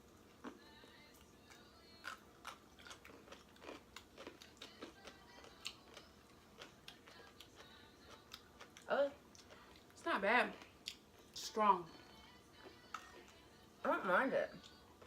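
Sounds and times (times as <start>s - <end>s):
radish crunching while chewed: 1.5s - 9.9s.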